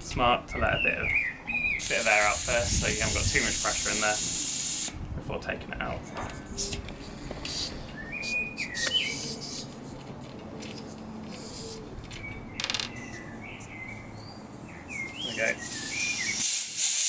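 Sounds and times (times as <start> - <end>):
birds chirping: 0.0 - 4.0, 7.2 - 9.8, 10.6 - 16.5
air hissing from tyre valve: 1.8 - 5.0, 7.4 - 7.8, 15.3 - 17.0.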